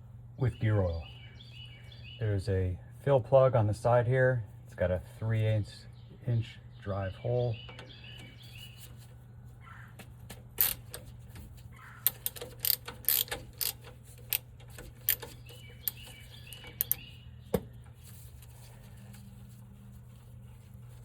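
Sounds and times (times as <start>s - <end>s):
steady low hum: 0.0s - 21.0s
ratchet metal clicks: 10.6s - 17.0s.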